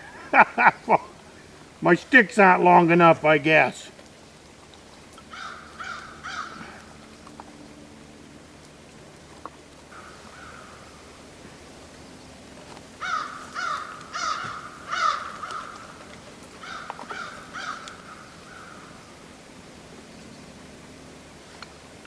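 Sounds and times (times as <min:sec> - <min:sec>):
crow cawing: 0:05.3 - 0:07.0, 0:09.9 - 0:10.9, 0:13.0 - 0:16.0, 0:16.6 - 0:19.0.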